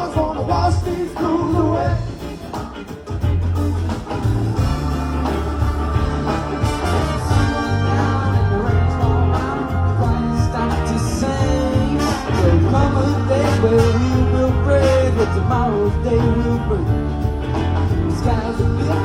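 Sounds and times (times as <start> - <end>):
walking bass line: 0.0 - 19.0
person singing: 4.8 - 17.0, 18.0 - 19.0.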